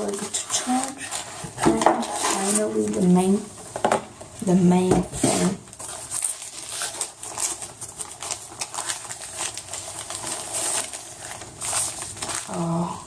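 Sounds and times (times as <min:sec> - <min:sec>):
packaging rustling and crinkling: 0:00.0 - 0:13.0.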